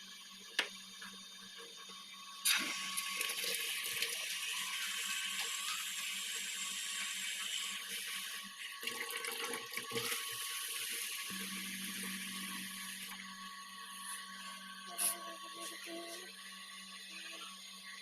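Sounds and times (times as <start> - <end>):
water running from tap: 2.4 - 16.3.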